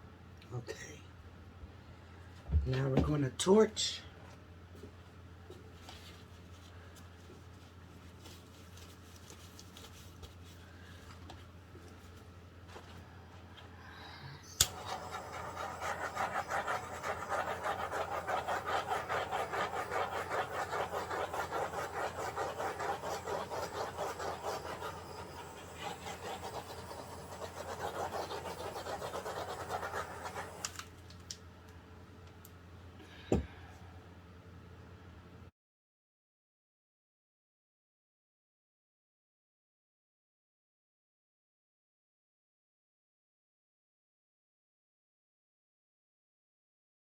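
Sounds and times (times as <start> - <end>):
torch flame hissing: 14.6 - 30.9.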